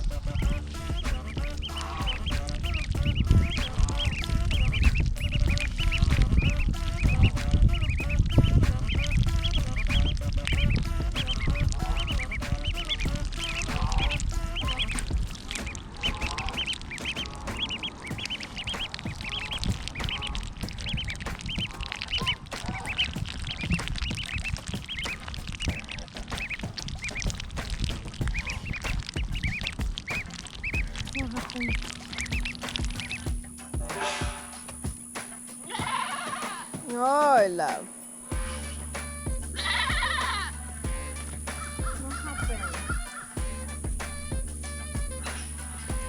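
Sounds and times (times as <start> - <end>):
low rumble: 0.0 - 24.6, 38.3 - 46.0
ducks quacking: 0.0 - 46.0.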